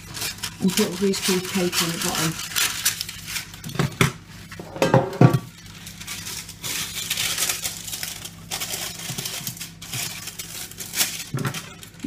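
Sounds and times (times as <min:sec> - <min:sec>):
paper rustling and crinkling: 0:00.0 - 0:12.0
kitchen items knocking: 0:03.7 - 0:05.5.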